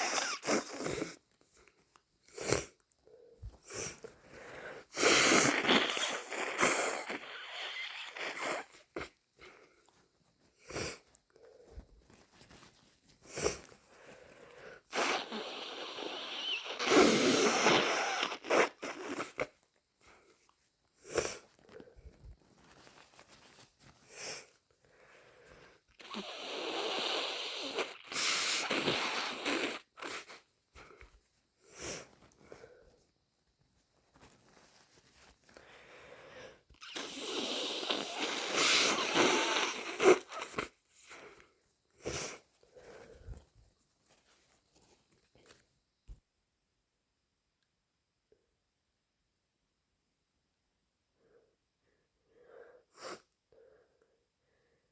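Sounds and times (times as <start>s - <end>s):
person sniffing: 0.0s - 1.2s, 2.3s - 2.8s, 3.4s - 9.8s, 10.5s - 11.8s, 12.5s - 20.2s, 21.0s - 22.0s, 24.0s - 32.9s, 35.5s - 43.4s, 52.4s - 53.9s
person blowing nose: 0.0s - 1.3s, 2.3s - 2.8s, 3.6s - 9.6s, 10.6s - 11.1s, 12.5s - 14.2s, 14.9s - 20.2s, 21.0s - 21.6s, 24.0s - 24.6s, 26.0s - 31.0s, 31.6s - 32.8s, 35.6s - 41.4s, 42.0s - 43.3s, 52.9s - 53.3s
person sneezing: 36.8s - 40.7s.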